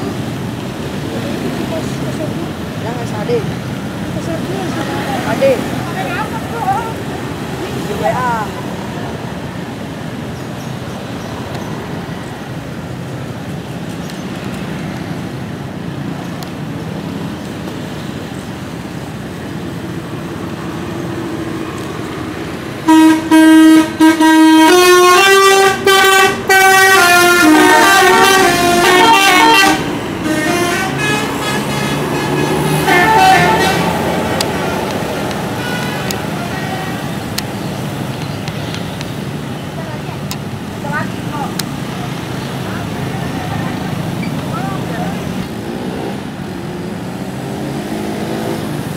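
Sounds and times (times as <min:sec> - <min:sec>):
road traffic noise: 0:00.0 - 0:48.9
musical bus horn: 0:22.8 - 0:37.2.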